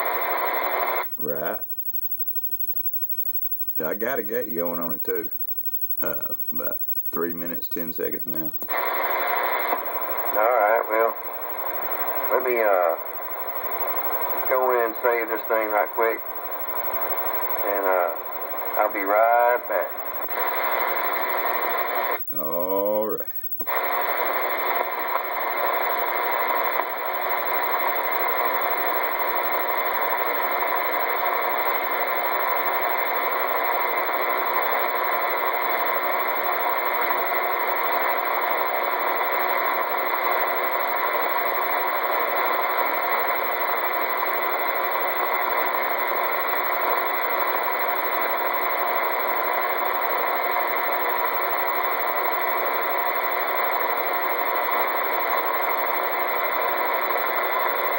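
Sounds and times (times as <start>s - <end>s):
radio static hiss: 0.0s - 57.9s.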